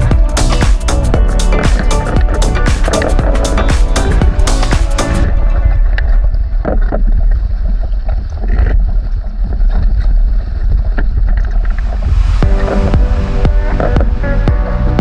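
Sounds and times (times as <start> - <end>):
music: 0.0 - 7.0, 12.2 - 15.0
sailing boat rushing through water: 0.0 - 15.0
wind buffeting the microphone: 0.0 - 15.0.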